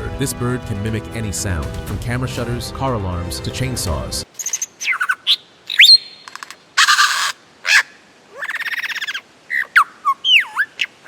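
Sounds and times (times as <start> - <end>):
lyrebird mimicry song: 4.3 - 11.0.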